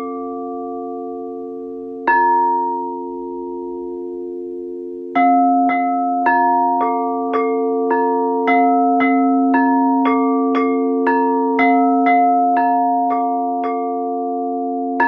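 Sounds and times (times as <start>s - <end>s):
singing bowls drone: 0.0s - 15.0s.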